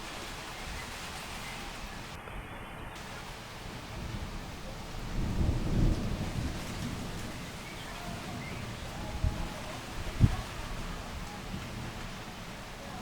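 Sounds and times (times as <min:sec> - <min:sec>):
heavy rain falling: 0:00.0 - 0:02.2, 0:03.0 - 0:13.0
thunder rumbling: 0:03.1 - 0:13.0.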